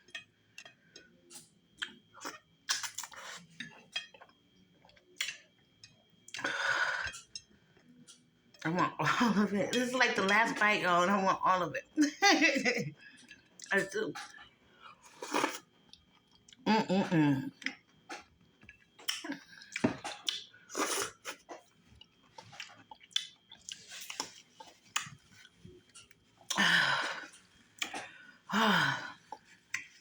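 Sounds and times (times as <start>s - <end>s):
wet chewing clicks and smacks: 1.3s - 4.3s, 4.9s - 5.5s, 17.6s - 20.5s, 21.2s - 26.6s.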